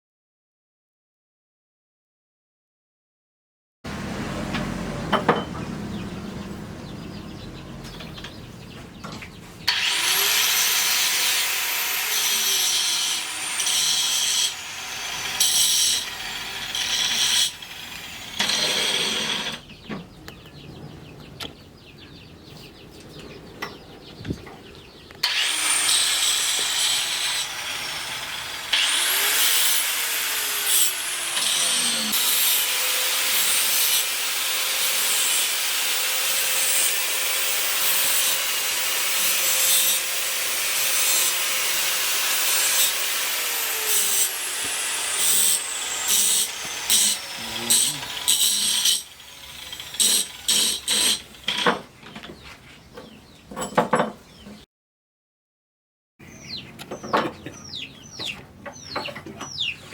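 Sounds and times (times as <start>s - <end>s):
power tool working wood: 3.9s - 8.7s, 9.6s - 19.7s, 25.2s - 51.6s.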